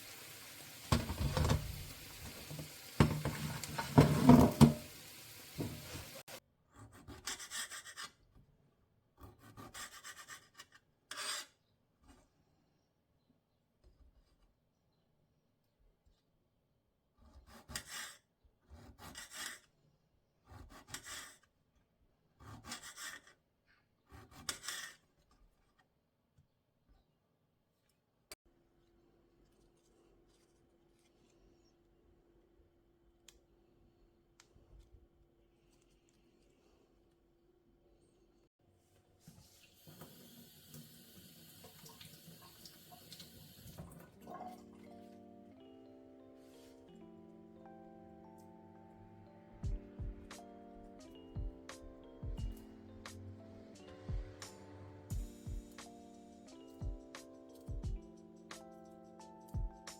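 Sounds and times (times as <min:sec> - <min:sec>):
tap running water into sink: 0:00.0 - 0:06.4, 0:39.6 - 0:44.2
soft background music: 0:44.2 - 0:59.9.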